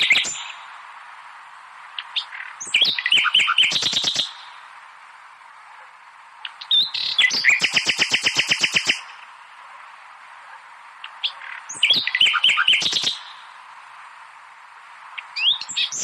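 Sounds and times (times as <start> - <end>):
bird singing rapid chirps: 0.0 - 0.7, 1.9 - 4.6, 6.4 - 9.4, 11.0 - 13.6, 15.1 - 16.0
faint steady hiss: 0.0 - 16.0.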